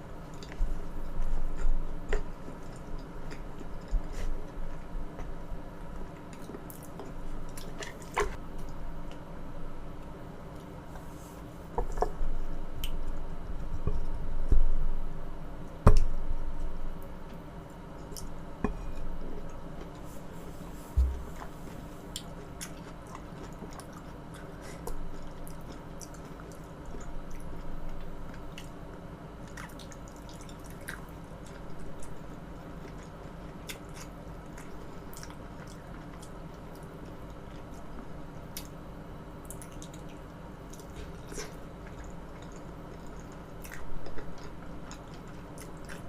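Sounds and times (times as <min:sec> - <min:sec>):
wet chewing of soft food: 0:00.2 - 0:09.2, 0:19.3 - 0:38.8, 0:39.4 - 0:46.0
sharp knocks: 0:21.0 - 0:21.5.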